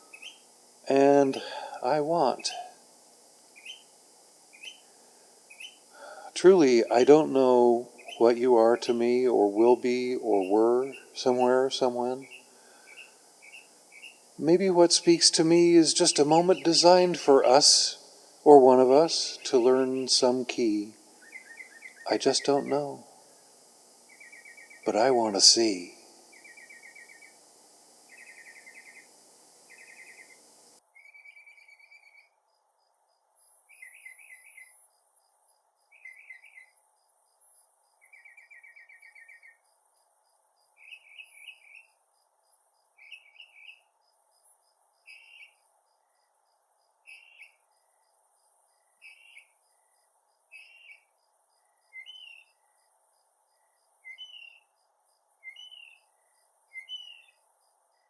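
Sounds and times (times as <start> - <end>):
mockingbird singing: 0.0 - 32.2, 52.0 - 52.5, 54.1 - 54.6, 55.4 - 56.0, 56.7 - 57.4
insects chirping: 0.0 - 58.0.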